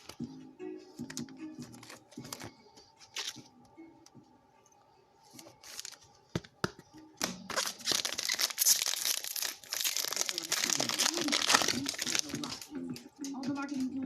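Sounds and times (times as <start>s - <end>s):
foil pack tearing and crinkling: 5.6s - 6.0s, 7.4s - 12.7s.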